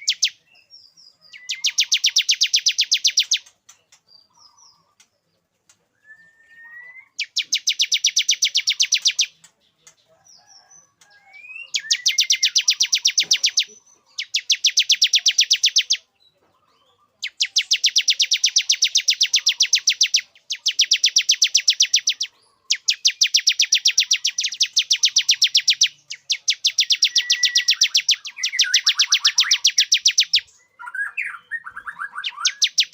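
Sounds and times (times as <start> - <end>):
bird singing rapid high notes: 0.0 - 4.8, 6.2 - 9.5, 11.4 - 16.1, 16.7 - 32.9
bird rising whistle: 26.8 - 28.0.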